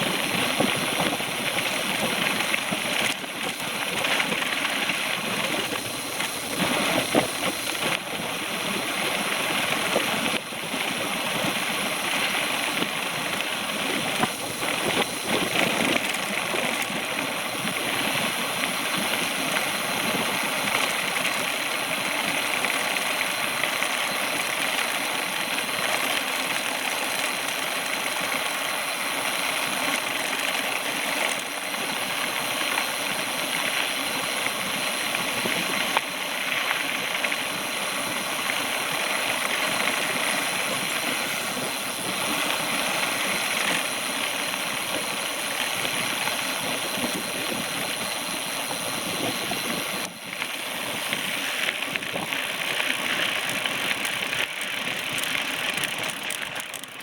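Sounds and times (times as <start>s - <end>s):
bicycle tyres rolling: 0.0s - 57.0s
wind buffeting microphone: 31.9s - 56.4s.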